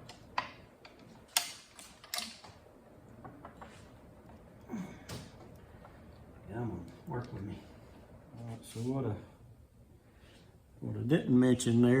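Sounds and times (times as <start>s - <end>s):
metal parts clicking and clinking: 0.0s - 2.6s.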